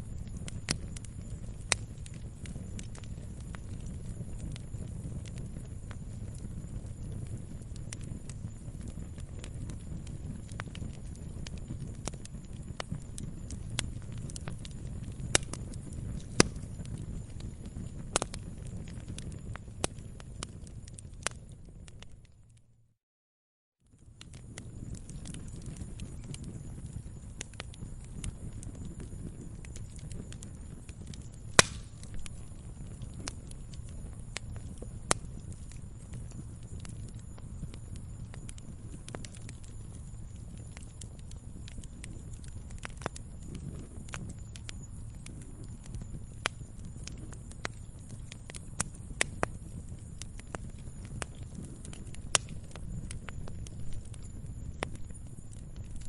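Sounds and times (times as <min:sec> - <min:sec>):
sharp pops from fire: 0:00.0 - 0:22.4, 0:24.0 - 0:56.0
log fire crackling: 0:00.0 - 0:22.6, 0:24.0 - 0:56.0
low rumble of flames: 0:00.0 - 0:22.9, 0:23.8 - 0:56.0.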